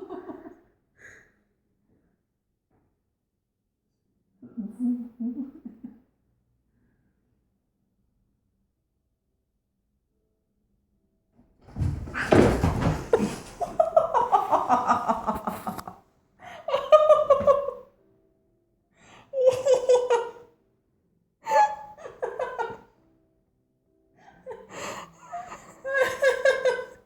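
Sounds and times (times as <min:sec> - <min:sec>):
person laughing hard: 0:11.8 - 0:15.9.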